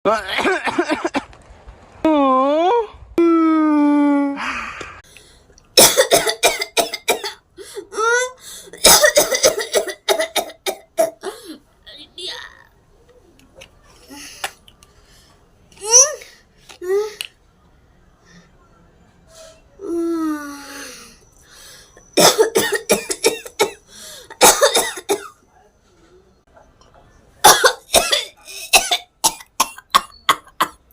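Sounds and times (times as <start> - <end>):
person coughing: 5.8 - 7.4, 8.8 - 11.5.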